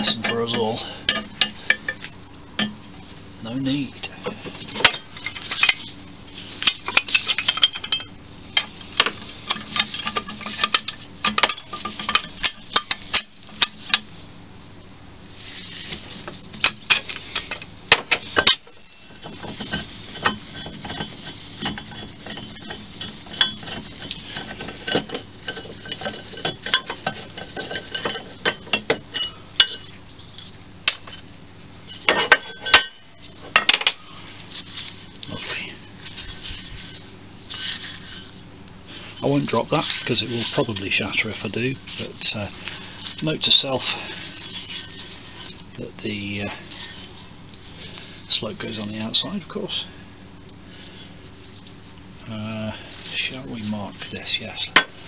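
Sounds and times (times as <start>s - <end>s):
metal parts and tools clinking: 6.6s - 14.0s, 16.6s - 30.0s, 31.9s - 34.0s, 39.2s - 45.6s.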